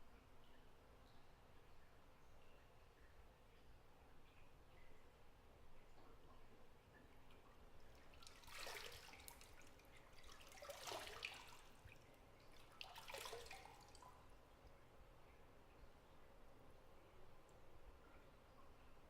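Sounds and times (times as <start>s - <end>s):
bathwater splashing and dripping: 7.2s - 14.7s.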